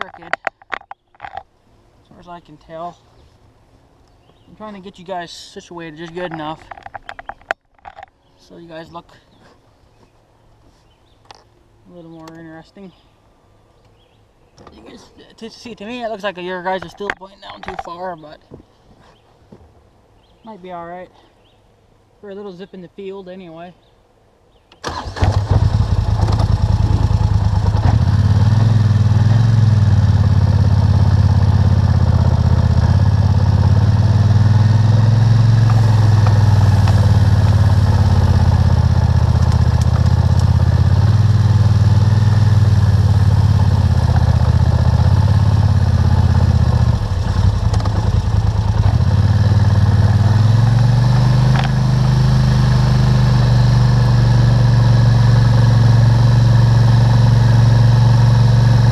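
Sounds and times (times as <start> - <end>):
atv engine starting and running: 24.7 - 58.9.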